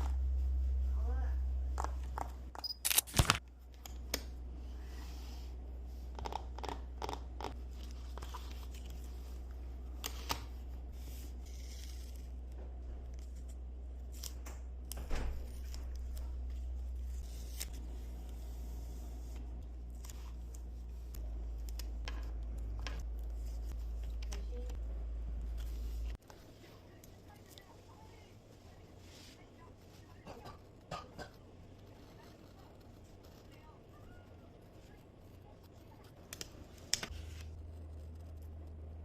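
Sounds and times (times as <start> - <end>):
steady low hum: 0.0 - 39.0
paper peeling and rustling: 31.6 - 38.9.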